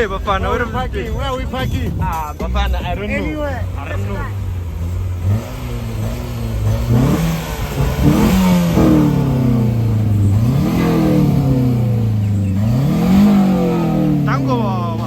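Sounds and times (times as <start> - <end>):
car engine revving: 0.0 - 15.0.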